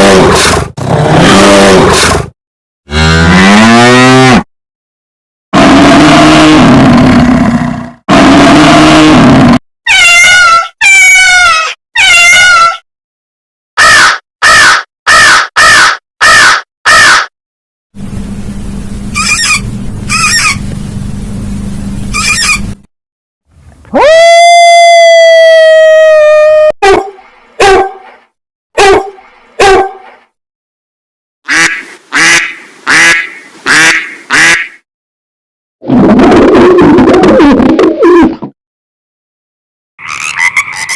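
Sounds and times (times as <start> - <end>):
low hum: 18.0 - 22.8
farm animal calls: 19.2 - 20.6, 22.1 - 22.7, 40.0 - 40.9.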